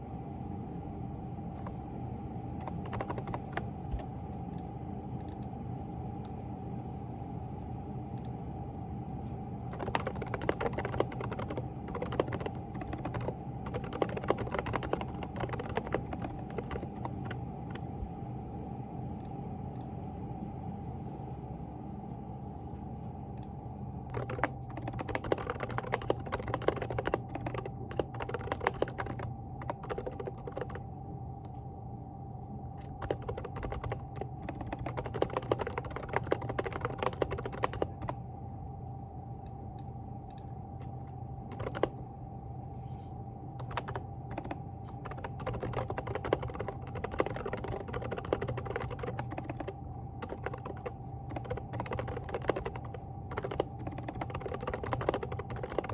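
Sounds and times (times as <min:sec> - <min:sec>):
steady background hum: 0:00.0 - 0:55.9
mechanical keyboard typing: 0:02.6 - 0:04.1, 0:09.7 - 0:17.8, 0:24.1 - 0:31.6, 0:32.8 - 0:38.2, 0:41.5 - 0:42.0, 0:43.6 - 0:55.9.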